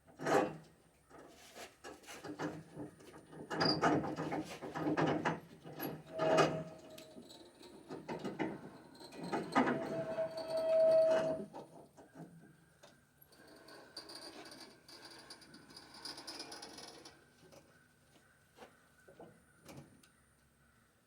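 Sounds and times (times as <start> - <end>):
short squeak: 9.2 - 11.5.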